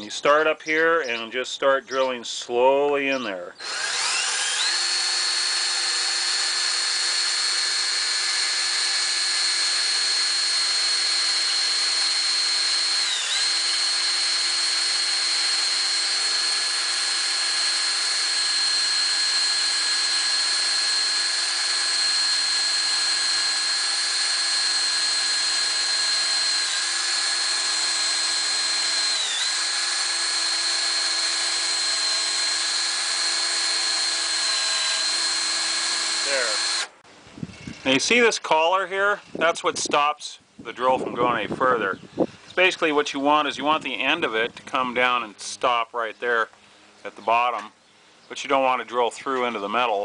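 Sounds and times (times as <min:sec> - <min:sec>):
electric drill boring wood: 0:03.6 - 0:37.0.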